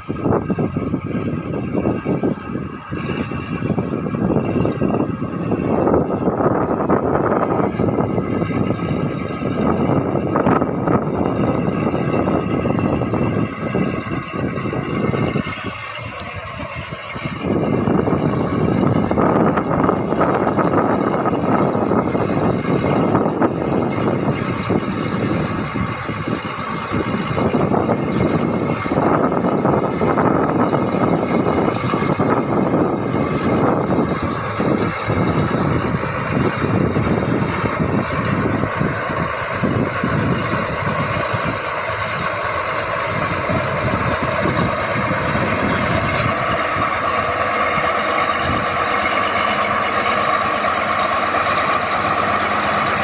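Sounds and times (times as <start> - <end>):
bulldozer diesel engine running: 0.0 - 53.0.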